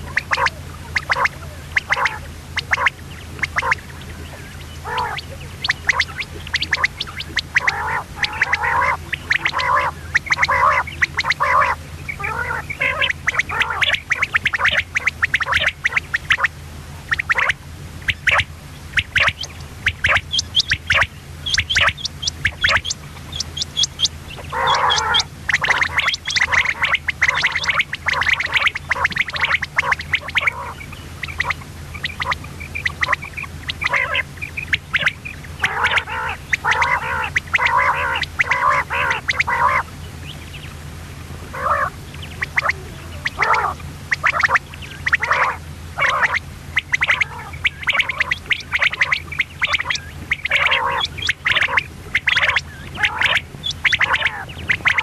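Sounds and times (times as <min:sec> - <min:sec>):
quail chattering calls: 0:00.0 - 0:40.8, 0:41.4 - 0:55.0
quail chirping: 0:00.0 - 0:40.8, 0:41.5 - 0:55.0
steady low hum: 0:00.0 - 0:55.0.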